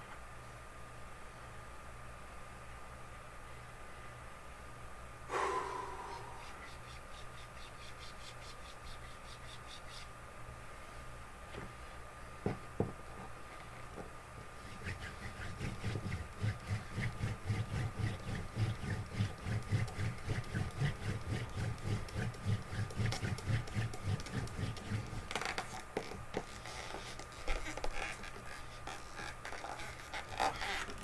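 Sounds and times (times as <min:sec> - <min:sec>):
hand drill friction strokes: 0:14.6 - 0:25.8, 0:26.4 - 0:31.0.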